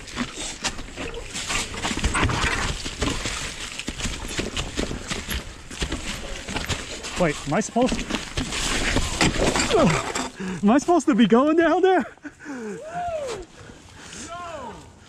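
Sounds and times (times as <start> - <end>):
footsteps on rocks and leaves: 0.0 - 11.0.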